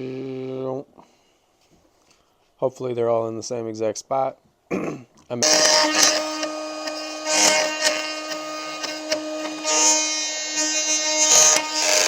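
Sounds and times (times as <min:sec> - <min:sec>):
power tool whining: 0:05.4 - 0:12.0
wood cutting rasps: 0:05.4 - 0:12.0.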